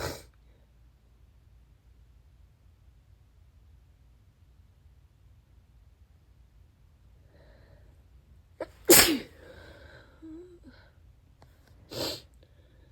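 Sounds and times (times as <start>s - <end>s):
person sneezing: 0.0s - 0.3s, 8.6s - 10.6s, 11.9s - 12.3s.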